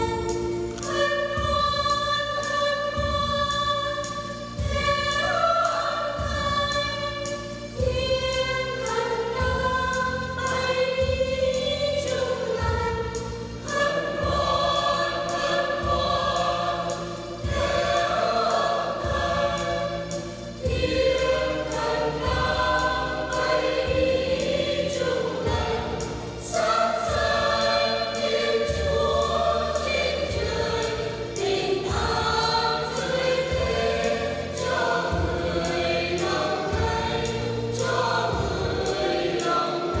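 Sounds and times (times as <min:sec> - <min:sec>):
church choir singing: 0:00.0 - 0:40.0.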